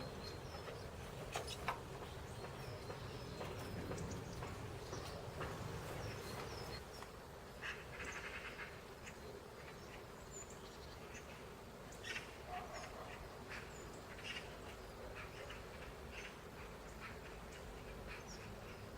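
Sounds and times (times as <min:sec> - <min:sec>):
birds chirping: 0:00.0 - 0:08.2.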